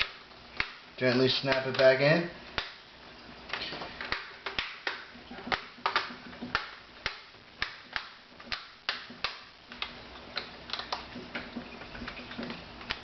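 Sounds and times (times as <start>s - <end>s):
plastic clips snapping: 0.0s - 0.8s, 3.5s - 13.0s.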